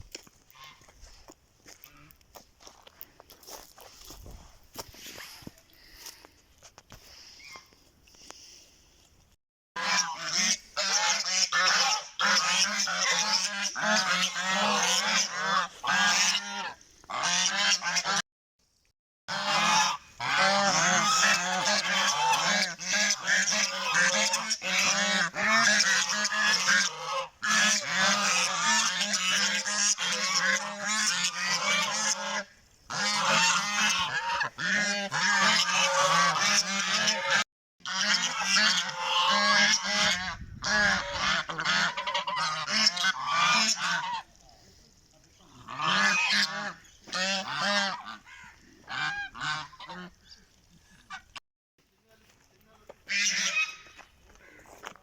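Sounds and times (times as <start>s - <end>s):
geese honking: 9.8s - 18.2s, 19.3s - 44.4s, 45.5s - 50.2s, 53.1s - 54.0s.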